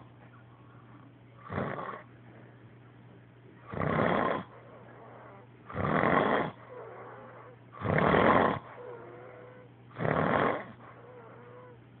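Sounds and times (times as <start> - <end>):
man snoring loudly: 3.7 - 4.5, 5.7 - 6.6, 7.8 - 8.6, 10.0 - 10.8.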